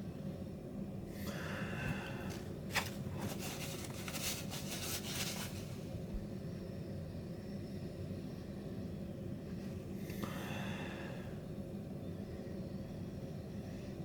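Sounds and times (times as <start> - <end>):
low room hum: 0.0 - 14.0.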